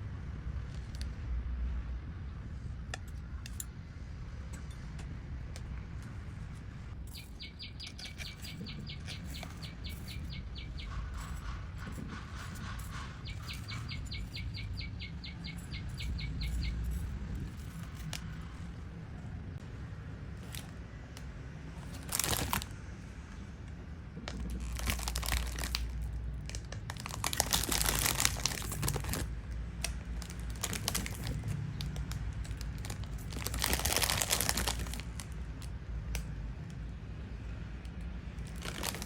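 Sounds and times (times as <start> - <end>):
crinkling handling noise: 5.5 - 18.8, 20.3 - 21.2, 21.8 - 22.8, 24.2 - 35.8, 38.4 - 39.0.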